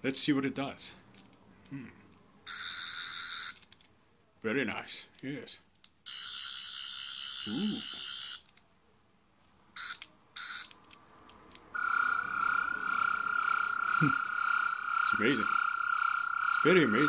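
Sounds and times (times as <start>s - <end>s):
toy electronic warbling whir: 2.5s - 3.6s, 6.1s - 8.4s, 9.8s - 10.8s, 11.8s - 17.0s.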